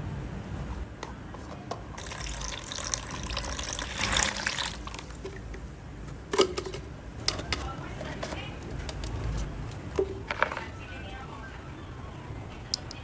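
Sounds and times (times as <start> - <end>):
slime squelching by hand: 1.9 - 5.8.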